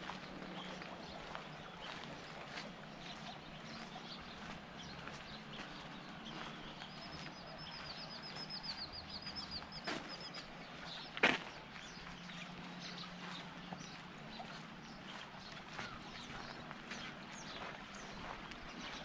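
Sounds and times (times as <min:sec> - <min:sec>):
bird chirping: 0:00.5 - 0:19.0.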